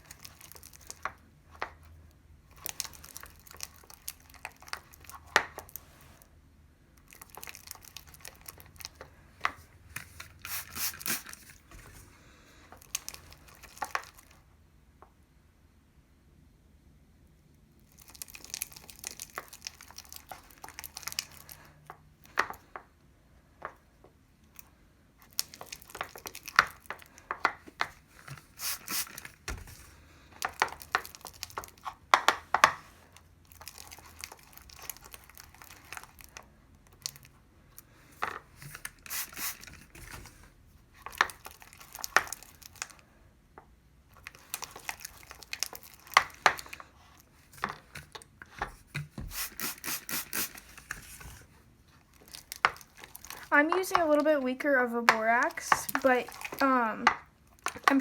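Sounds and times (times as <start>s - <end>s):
sticky slime crackling: 0.0s - 1.8s, 2.5s - 5.8s, 7.0s - 9.2s, 17.8s - 21.9s, 25.2s - 37.4s, 40.8s - 43.1s, 44.0s - 48.4s, 50.4s - 58.0s.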